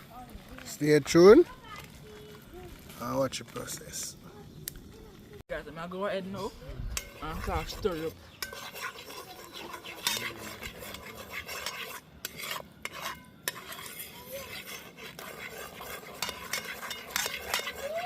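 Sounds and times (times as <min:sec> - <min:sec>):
spoon scraping a pot: 0:06.9 - 0:18.0
oil sizzling: 0:07.0 - 0:18.0.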